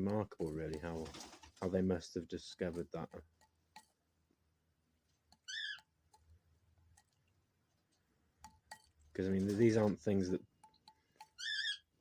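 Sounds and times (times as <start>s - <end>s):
high wavering bird call: 5.5s - 5.9s, 11.4s - 11.9s.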